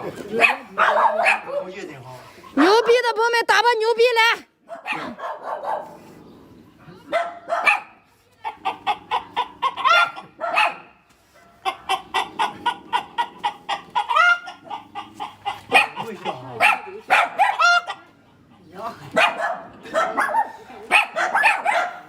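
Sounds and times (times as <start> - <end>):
hen cackling: 8.4 - 10.8, 11.4 - 18.5.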